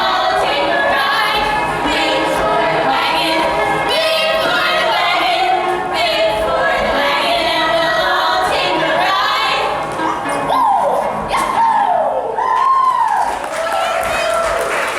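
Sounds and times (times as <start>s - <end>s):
women singing together: 0.0s - 11.9s
stage show music: 0.0s - 14.9s.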